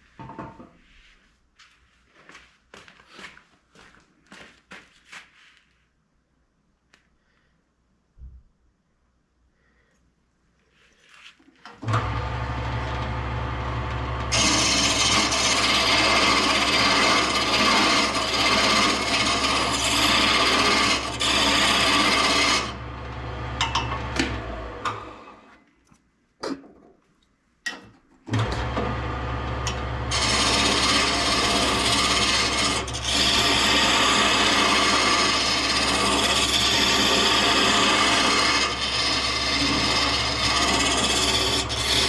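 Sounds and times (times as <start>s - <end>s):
tool rasping wood: 14.3s - 22.9s, 30.1s - 42.0s.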